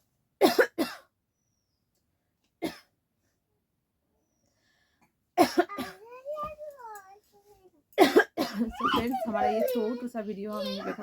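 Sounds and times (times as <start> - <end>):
person coughing: 8.0 - 9.7.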